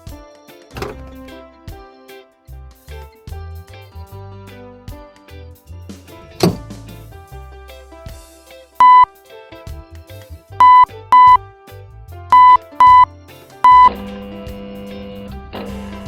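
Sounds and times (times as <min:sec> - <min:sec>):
background music: 0:00.0 - 0:16.0
short electronic beeps: 0:08.8 - 0:09.1, 0:10.6 - 0:11.4, 0:12.3 - 0:14.0.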